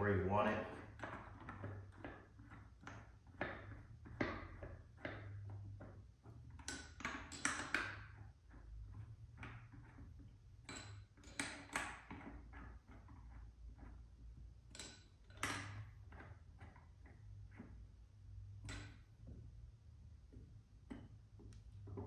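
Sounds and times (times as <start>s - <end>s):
light metallic clicks and taps: 14.7s - 16.8s.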